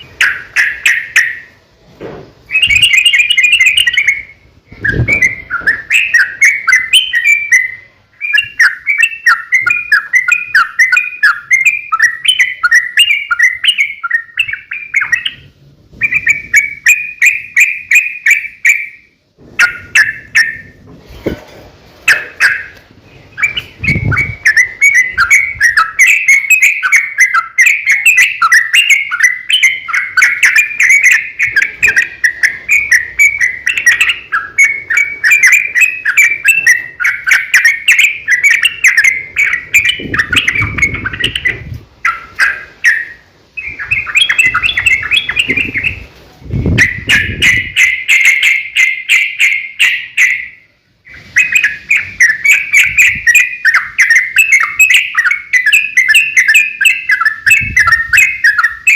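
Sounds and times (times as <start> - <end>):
bird chirping song: 0.0 - 1.7, 2.4 - 58.9.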